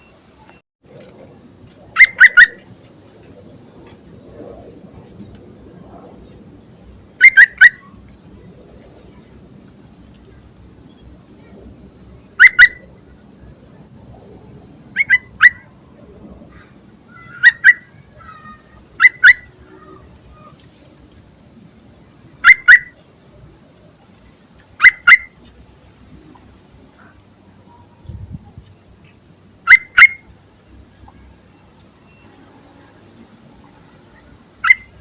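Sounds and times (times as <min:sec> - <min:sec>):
bird calling sharp notes: 0:02.0 - 0:02.8, 0:07.2 - 0:08.0, 0:12.4 - 0:12.9, 0:15.0 - 0:15.7, 0:17.1 - 0:20.6, 0:22.4 - 0:23.0, 0:24.8 - 0:25.4, 0:29.6 - 0:30.3, 0:34.6 - 0:35.0.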